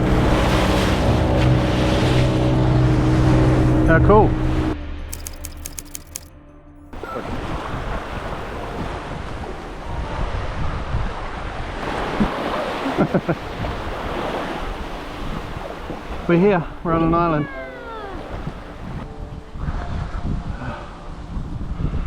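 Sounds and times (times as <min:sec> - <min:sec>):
waves washing in: 0:07.0 - 0:17.0.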